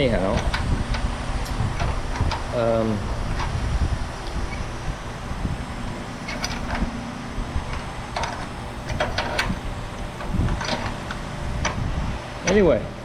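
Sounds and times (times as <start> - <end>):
steady low hum: 0.0 - 13.0
metallic clicks and scrapes: 5.7 - 11.9.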